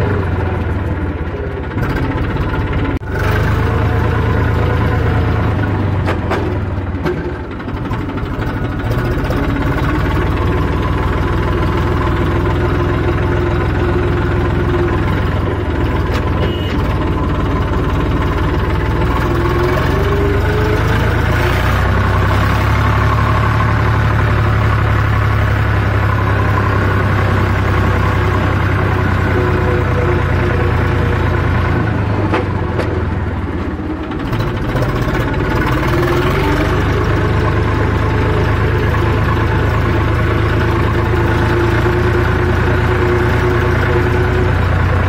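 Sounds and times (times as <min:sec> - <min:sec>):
tractor diesel engine running: 0:00.0 - 0:45.0.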